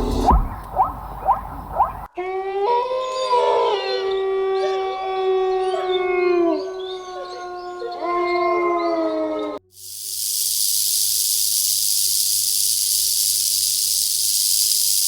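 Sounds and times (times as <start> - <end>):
wolves howling: 2.1 - 9.6
steady hiss: 9.7 - 15.0.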